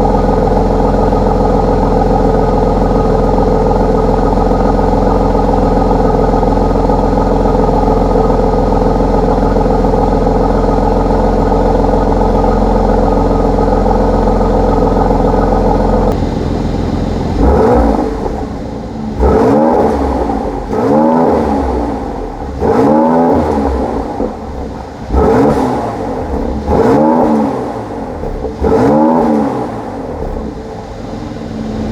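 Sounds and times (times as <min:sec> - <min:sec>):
car engine idling: 0:00.0 - 0:31.9
engine revving blips: 0:12.0 - 0:31.9.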